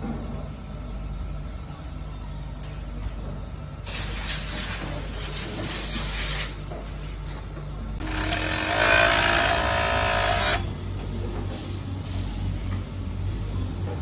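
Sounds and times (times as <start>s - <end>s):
sewing machine whining buzz: 8.0s - 10.8s.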